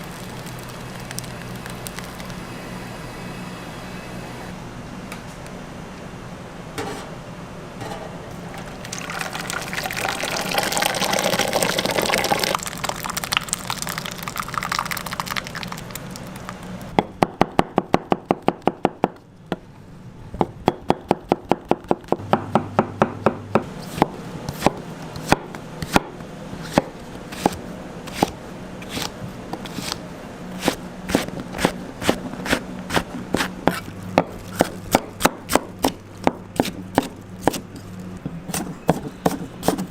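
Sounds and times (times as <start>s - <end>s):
knife chopping on cutting board: 20.4s - 30.0s, 30.6s - 37.6s.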